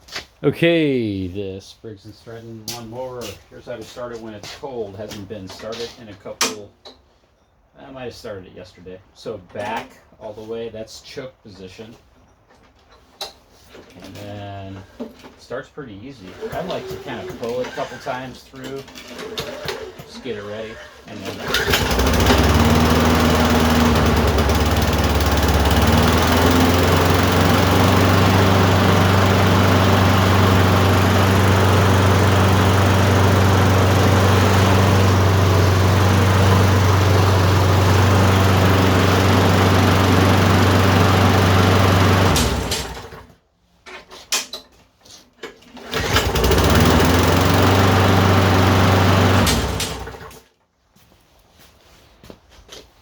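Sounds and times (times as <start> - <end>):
lawn mower engine running: 16.3 - 18.0, 20.8 - 43.3, 45.8 - 50.4.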